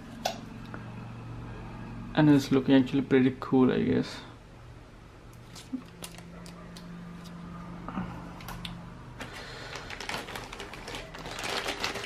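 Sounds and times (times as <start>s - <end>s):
packaging crackling: 5.4s - 6.6s, 9.2s - 12.0s.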